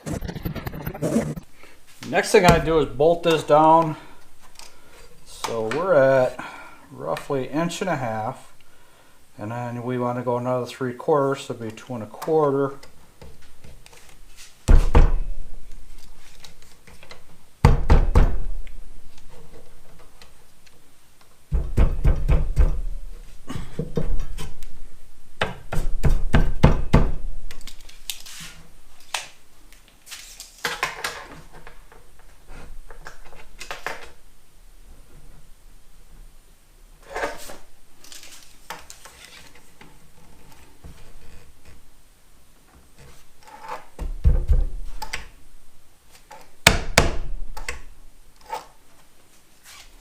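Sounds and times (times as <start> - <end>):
heavy thuds on wood: 2.4 - 2.9.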